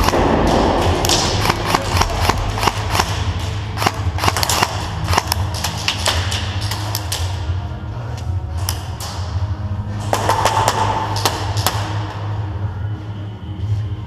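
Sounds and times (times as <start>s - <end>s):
airsoft guns firing: 0.0s - 7.4s, 10.0s - 12.4s
bass-heavy electronic music: 0.0s - 14.0s.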